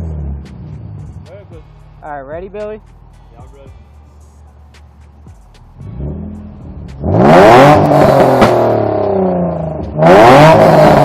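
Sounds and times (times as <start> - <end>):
car engine revving loudly: 0.0 - 1.0, 5.8 - 11.0.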